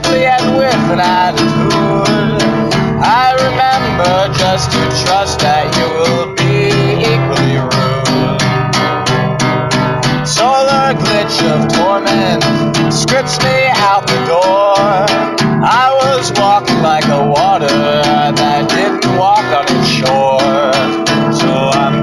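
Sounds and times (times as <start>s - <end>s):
wavering melody line: 0.0s - 9.4s
acoustic guitar strumming: 0.0s - 22.0s.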